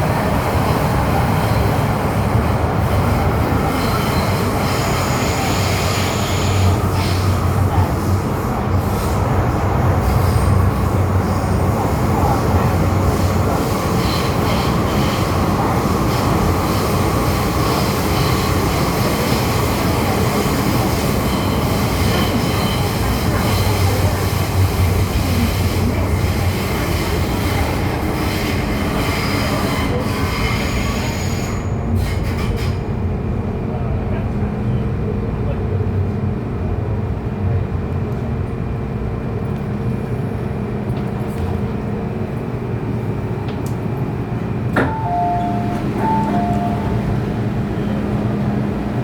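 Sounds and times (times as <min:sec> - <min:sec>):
train wheels rumbling on rail: 0:00.0 - 0:49.0
train motor hum: 0:39.8 - 0:49.0.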